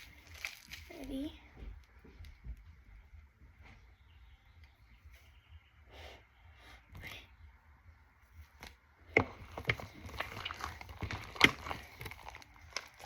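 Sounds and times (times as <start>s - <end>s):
slime squelching: 0.0s - 1.2s, 8.6s - 13.0s.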